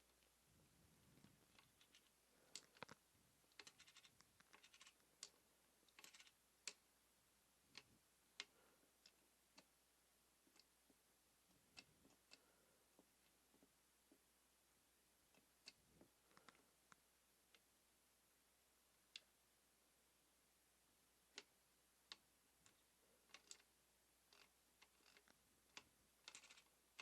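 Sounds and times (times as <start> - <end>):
metal parts and tools clicking: 5.9 - 6.4, 26.2 - 26.7.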